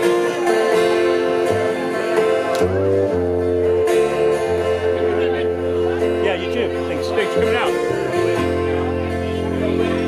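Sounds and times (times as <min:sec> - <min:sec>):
guitar over held chords: 0:00.0 - 0:10.0
low bass notes: 0:00.0 - 0:10.0.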